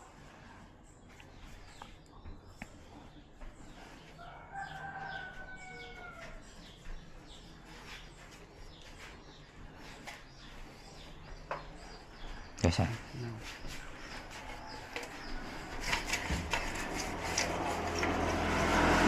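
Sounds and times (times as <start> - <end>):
rooster crowing: 4.2 - 6.4.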